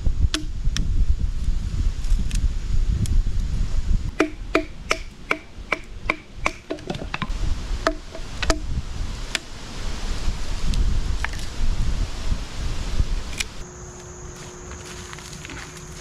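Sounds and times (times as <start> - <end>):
axe splitting firewood: 4.1 - 8.7.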